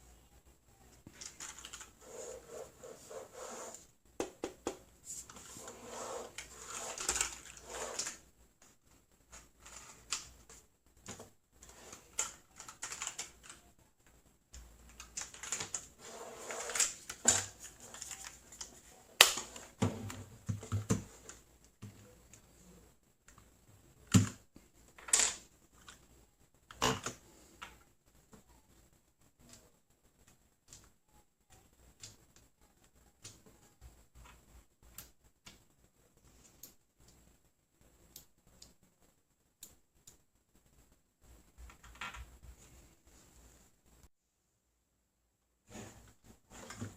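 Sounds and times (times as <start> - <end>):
mechanical keyboard clicking: 12.2 - 13.6.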